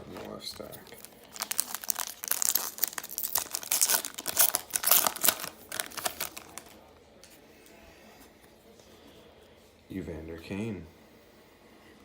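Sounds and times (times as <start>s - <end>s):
wrapper crinkling and tearing: 0.6s - 6.8s.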